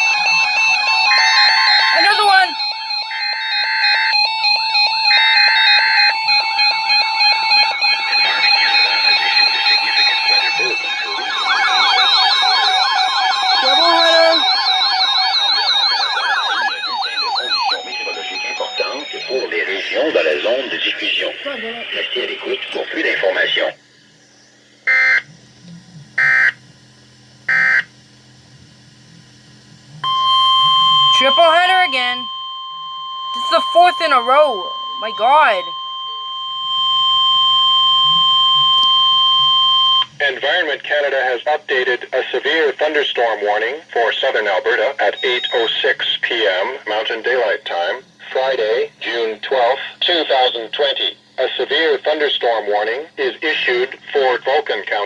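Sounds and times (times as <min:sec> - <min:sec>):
buzzing digital data tones: 0:00.2 - 0:20.0
steady alert tone: 0:09.0 - 0:14.7, 0:33.4 - 0:35.7.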